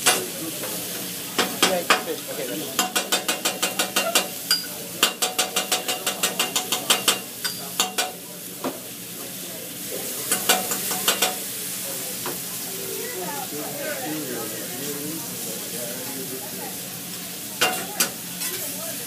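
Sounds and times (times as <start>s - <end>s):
metal spatulas clacking on griddle: 0.0s - 0.3s, 1.4s - 8.2s, 10.3s - 11.5s, 17.6s - 18.7s
food sizzling on griddle: 0.0s - 19.0s.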